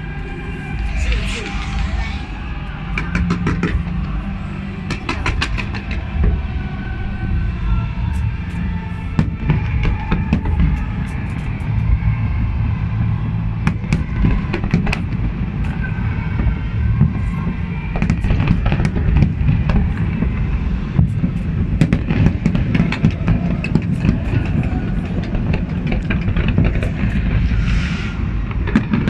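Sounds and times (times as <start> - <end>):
low rumble: 0.0 - 29.0.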